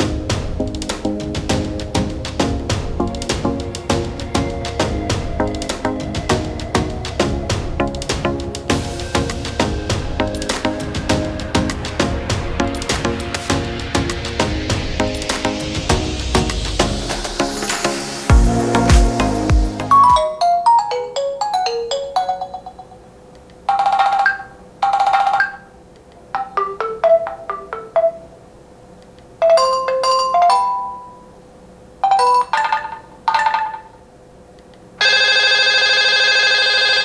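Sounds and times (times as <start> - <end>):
phone chime-like ringtones: 19.9 - 23.1, 29.4 - 31.4, 32.0 - 33.9, 35.0 - 37.0.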